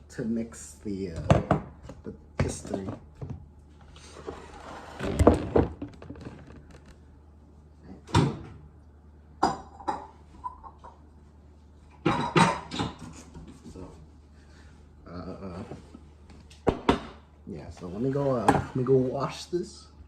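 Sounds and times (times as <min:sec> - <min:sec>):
kitchen cupboard opening and closing: 0:04.3 - 0:06.5
kitchenware clattering: 0:09.4 - 0:11.0, 0:12.0 - 0:13.2.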